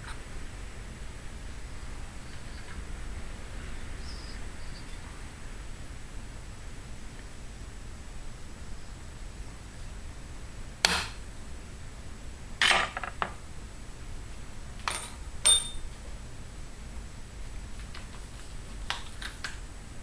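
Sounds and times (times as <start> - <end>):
metal tools clinking on table: 14.9 - 15.9.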